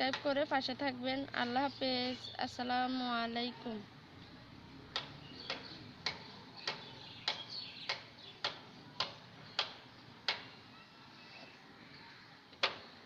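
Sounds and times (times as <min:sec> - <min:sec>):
sharp ticks: 0:04.9 - 0:10.4.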